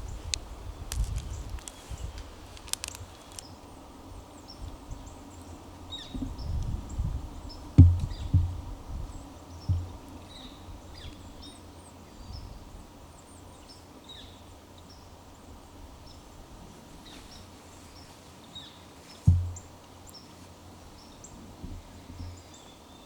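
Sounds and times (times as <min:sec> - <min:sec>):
low thumps: 0:07.7 - 0:10.1, 0:19.3 - 0:19.7.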